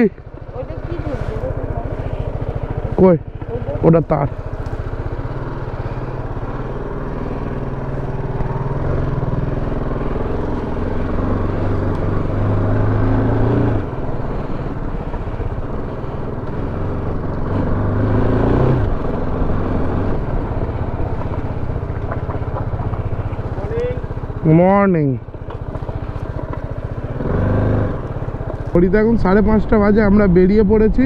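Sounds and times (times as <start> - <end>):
motorcycle engine accelerating: 0.0 - 31.0.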